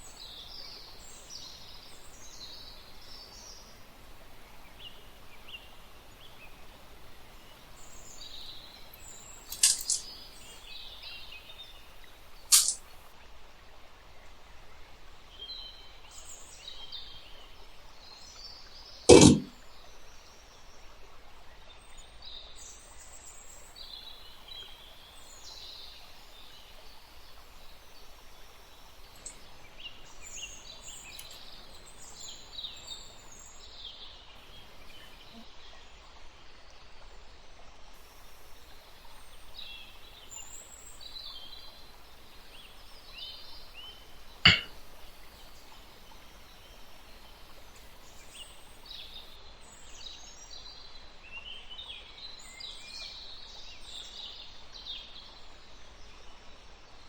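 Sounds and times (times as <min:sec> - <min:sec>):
small birds chirping: 0:00.0 - 0:13.0, 0:23.4 - 0:35.5
faint steady background noise: 0:00.0 - 0:57.0
sharp click: 0:09.5 - 0:10.1, 0:12.5 - 0:12.9, 0:19.1 - 0:19.5, 0:44.5 - 0:44.7.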